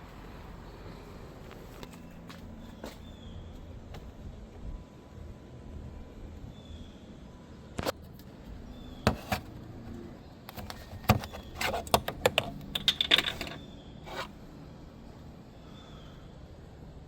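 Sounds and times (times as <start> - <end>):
small hard objects clicking: 11.9 - 13.6.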